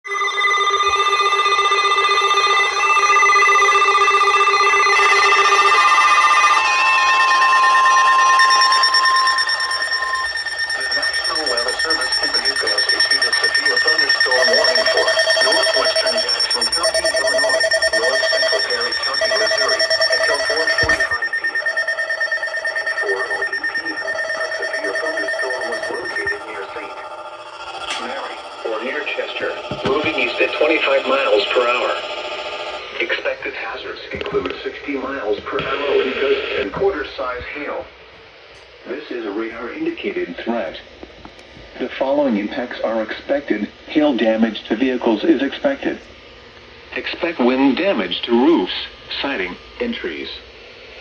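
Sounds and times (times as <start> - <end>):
pulsing electronic alert ringing: 0.0 - 33.7.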